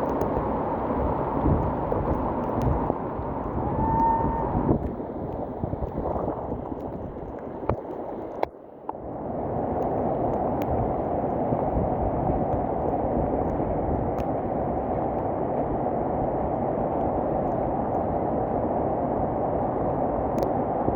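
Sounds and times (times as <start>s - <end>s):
floodwater rushing: 0.0s - 8.5s.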